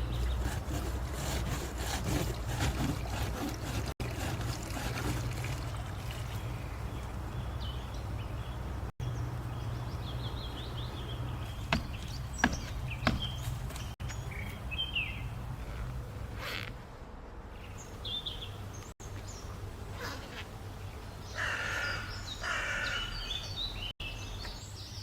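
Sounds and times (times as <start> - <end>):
small birds chirping: 5.5 - 16.8, 17.5 - 25.0.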